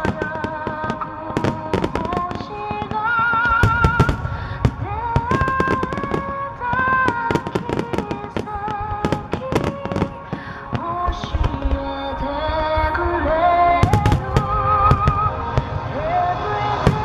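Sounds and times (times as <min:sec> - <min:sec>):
ballad over public address: 0:00.0 - 0:17.0
fireworks bangs and crackles: 0:00.0 - 0:17.0.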